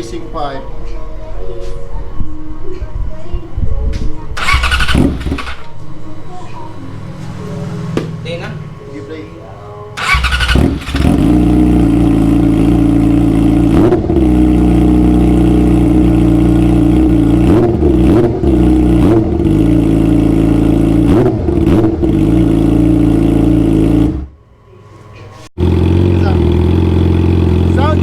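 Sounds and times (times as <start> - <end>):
motorcycle engine idling and revving: 4.4 - 5.7, 10.0 - 24.4, 25.6 - 28.0.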